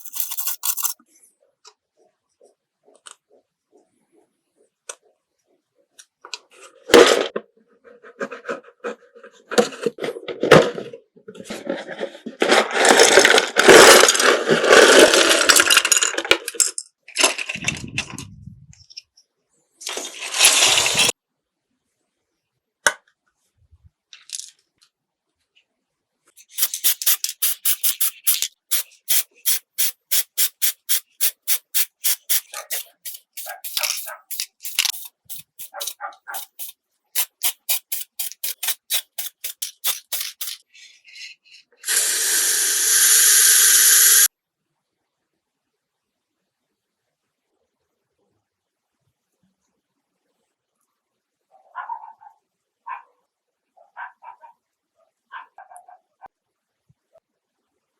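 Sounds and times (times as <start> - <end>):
rubbing and scraping: 0.0 - 1.0, 26.4 - 41.8
sanding or filing strokes: 0.0 - 1.0, 28.8 - 40.6.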